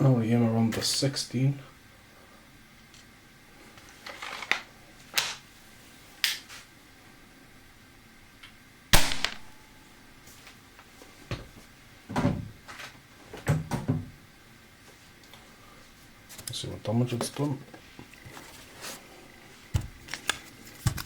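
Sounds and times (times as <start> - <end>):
air rifle shot: 9.0 - 9.6.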